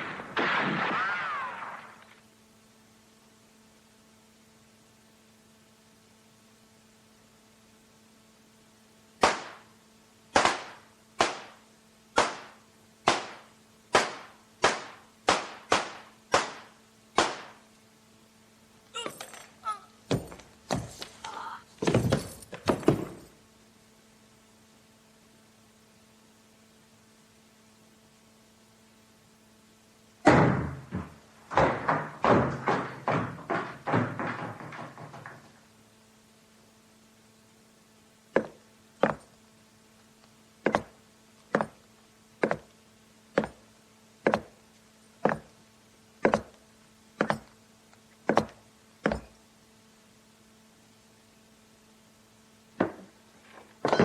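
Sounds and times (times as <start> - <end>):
gunshots with echo: 0.0 - 2.0, 10.4 - 11.6, 12.2 - 17.6
faint tape hiss and hum: 0.0 - 54.0.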